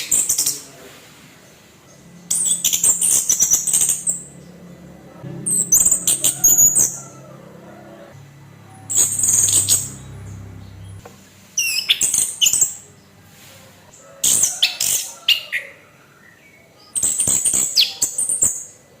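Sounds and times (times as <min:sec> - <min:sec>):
thrush singing: 0:02.0 - 0:11.0.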